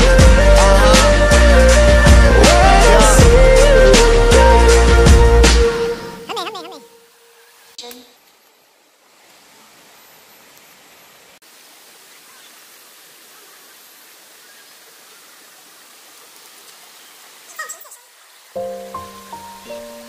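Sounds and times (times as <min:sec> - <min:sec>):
waterfall rushing: 0:00.0 - 0:06.0.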